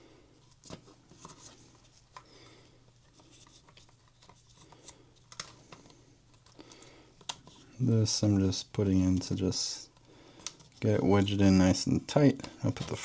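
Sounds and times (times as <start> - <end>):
small clicks and scratches: 0.4 - 2.3, 2.9 - 11.4.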